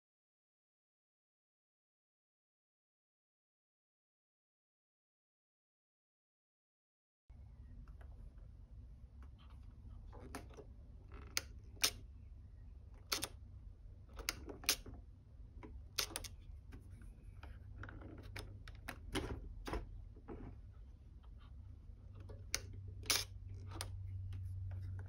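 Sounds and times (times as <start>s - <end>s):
steady low hum: 7.3s - 25.0s
plastic parts clicking: 10.2s - 12.0s, 13.0s - 13.4s, 14.1s - 15.0s, 15.6s - 16.8s, 22.2s - 24.0s.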